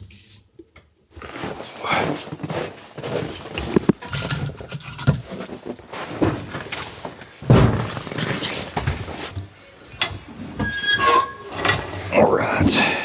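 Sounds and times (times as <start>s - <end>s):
knocks and thuds of objects handled: 3.6s - 9.4s.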